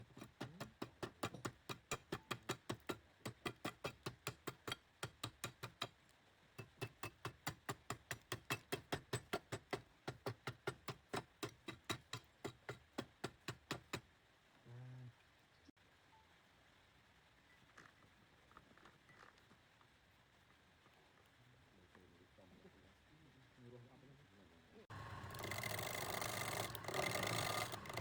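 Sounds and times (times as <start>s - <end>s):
sharp ticks: 25.3s - 28.0s.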